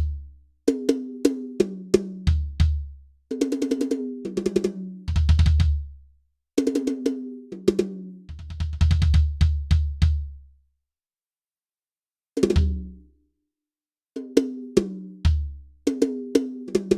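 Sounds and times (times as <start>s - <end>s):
fast drum tom fills: 8.4s - 10.2s.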